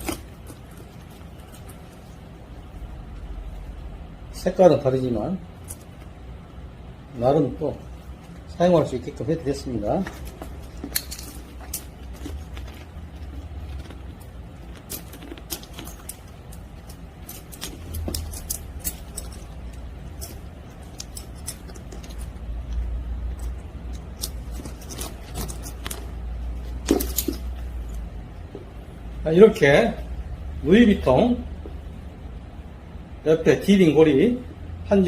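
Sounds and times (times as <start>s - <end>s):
metal hardware clicking and clinking: 0.0s - 1.9s, 5.6s - 6.1s, 9.8s - 28.7s
handbag handling rumble: 0.0s - 3.0s, 9.6s - 28.8s.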